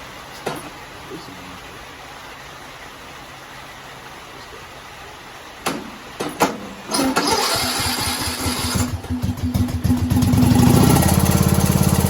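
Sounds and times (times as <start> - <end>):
electric starter cranking engine: 6.9 - 12.0.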